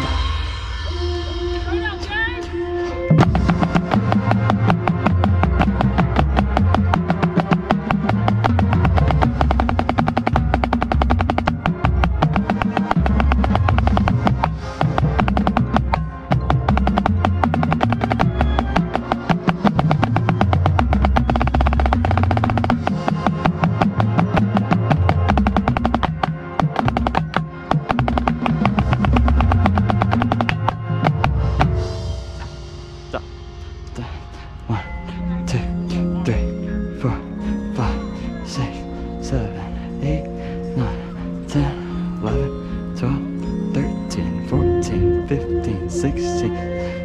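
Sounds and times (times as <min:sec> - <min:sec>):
marching band playing: 0:03.1 - 0:33.5
rapid snare drum strokes: 0:03.2 - 0:31.8.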